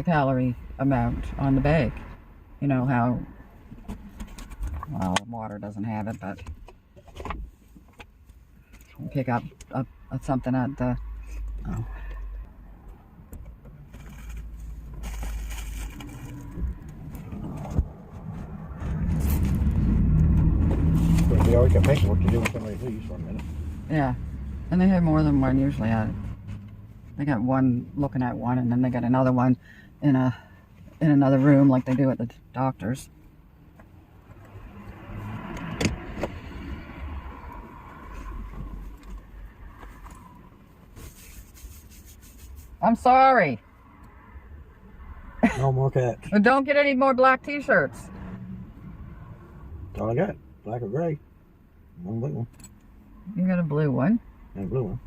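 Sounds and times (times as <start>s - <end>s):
car cabin rumble: 13.2s - 30.2s
car driving past: 16.2s - 26.9s, 34.2s - 40.5s.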